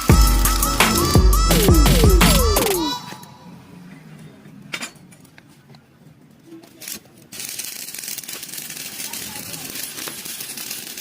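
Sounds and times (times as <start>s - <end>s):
welding arc crackling hiss: 0.0s - 2.9s, 6.8s - 11.0s
steel parts clinking: 4.7s - 5.3s.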